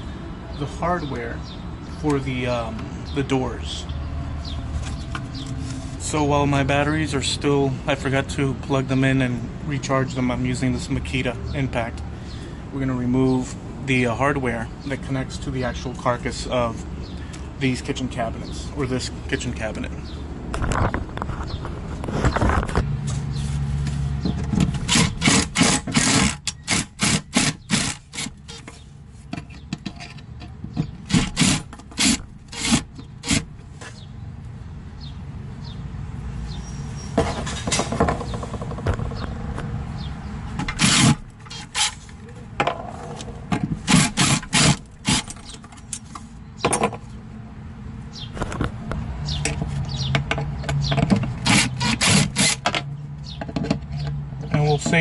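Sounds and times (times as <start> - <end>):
impact driver backing out screws: 24.6 - 28.6, 40.6 - 42.0, 43.9 - 45.6, 51.4 - 52.8
sharp clicks and knocks: 28.1 - 33.4, 37.2 - 39.8, 48.3 - 55.0.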